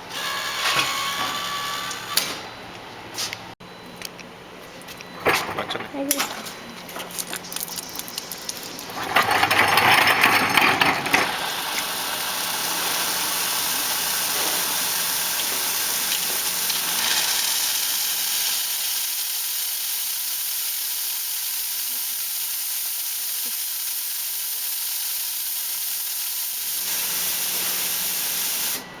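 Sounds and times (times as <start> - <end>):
espresso steam wand hissing: 11.2 - 28.8.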